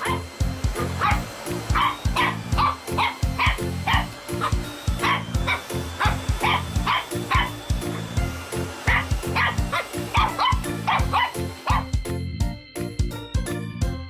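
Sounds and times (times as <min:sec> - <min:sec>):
puppy barking and yipping: 0:00.0 - 0:08.1, 0:08.8 - 0:12.0
background music with steady beat: 0:00.0 - 0:14.0.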